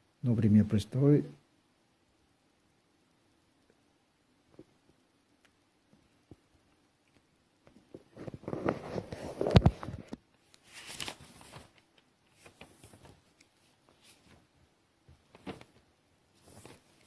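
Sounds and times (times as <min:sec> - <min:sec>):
rustling and light clicking: 0:05.4 - 0:17.0.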